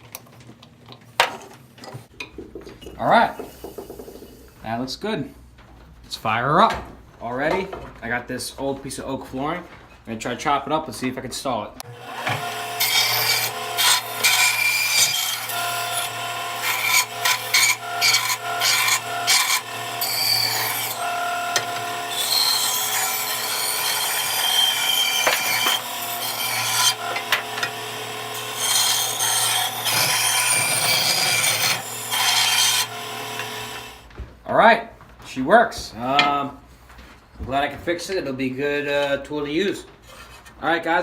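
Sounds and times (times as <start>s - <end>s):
bandsaw blade rasping through wood: 11.8s - 34.0s.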